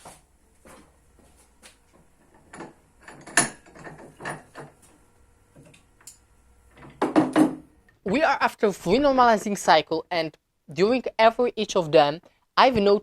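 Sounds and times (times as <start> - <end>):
objects knocking and clicking: 2.3 - 4.8, 5.6 - 7.7.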